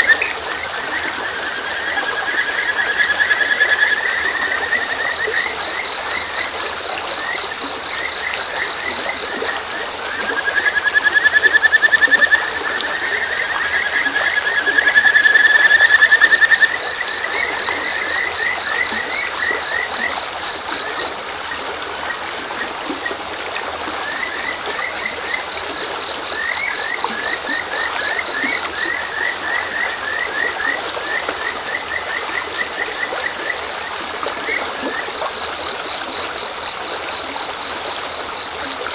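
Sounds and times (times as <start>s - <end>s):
frogs calling with rising trills: 0.0s - 23.3s, 24.0s - 38.9s
crickets chirping: 0.0s - 38.9s
shallow river murmuring: 0.0s - 38.9s.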